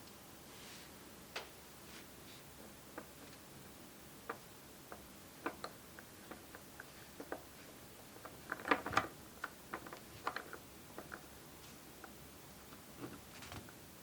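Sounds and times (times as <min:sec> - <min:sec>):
plastic pieces clicking together: 0:08.2 - 0:11.3.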